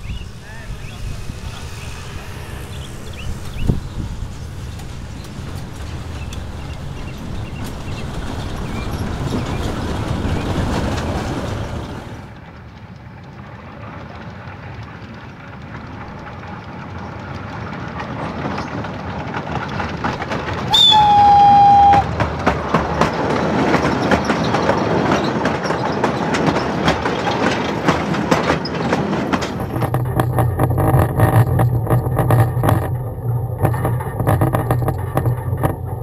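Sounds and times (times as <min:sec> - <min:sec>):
train approaching: 0:00.0 - 0:36.0
wheels clattering over rail joints: 0:00.0 - 0:36.0
locomotive whistle blast: 0:20.7 - 0:22.1.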